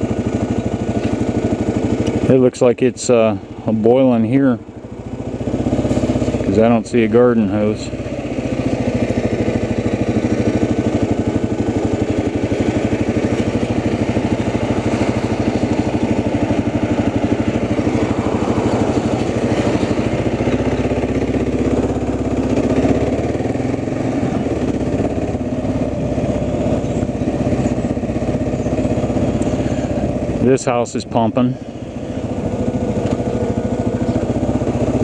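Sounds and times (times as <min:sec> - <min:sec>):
small engine running steadily: 0:00.0 - 0:35.0.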